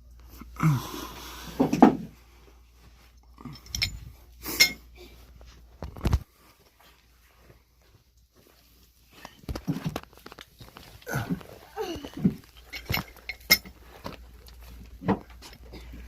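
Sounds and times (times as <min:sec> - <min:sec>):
sharp metallic clink: 0:03.5 - 0:04.8.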